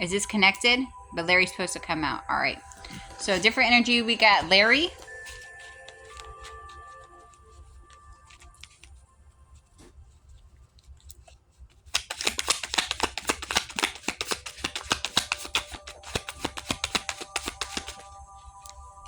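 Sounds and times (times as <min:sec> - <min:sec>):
cards being shuffled: 0:02.7 - 0:09.0, 0:10.7 - 0:18.8.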